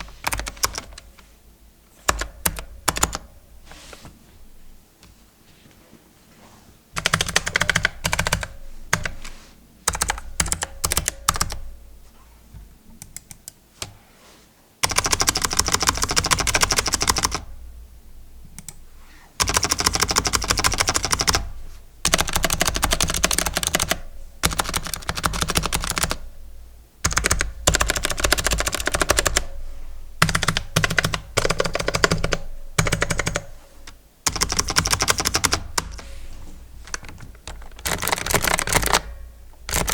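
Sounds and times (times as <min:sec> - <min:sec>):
mechanical keyboard typing: 0:00.0 - 0:01.2, 0:02.0 - 0:03.3, 0:07.0 - 0:09.3, 0:09.9 - 0:11.6, 0:14.8 - 0:17.4, 0:19.4 - 0:26.2, 0:27.0 - 0:29.5, 0:30.2 - 0:36.0, 0:36.8 - 0:39.9.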